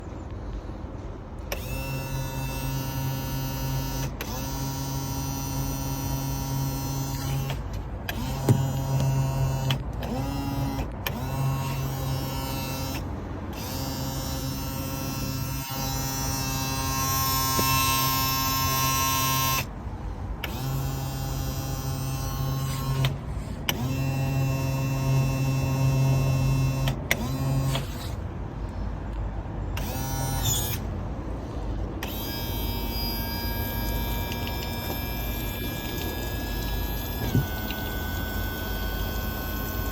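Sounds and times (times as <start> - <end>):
trim motor humming: 32.0 - 39.9.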